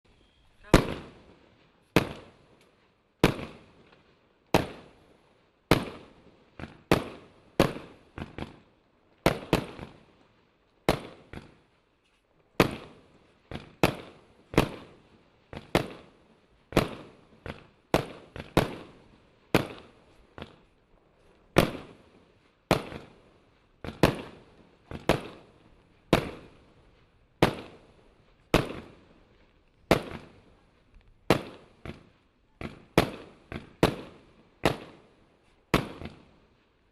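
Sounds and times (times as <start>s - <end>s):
firework salute bangs: 0.5s - 1.2s.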